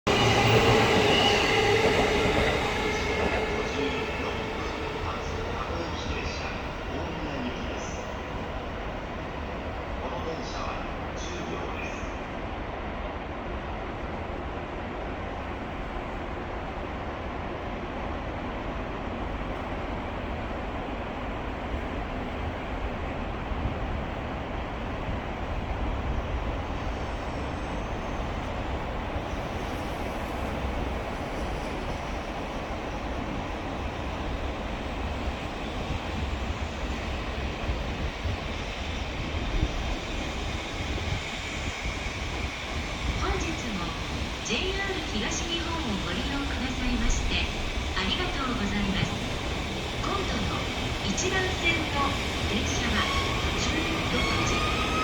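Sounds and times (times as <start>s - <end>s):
freight train rumbling: 0.0s - 55.0s
wind buffeting microphone: 0.1s - 8.9s, 28.3s - 55.0s.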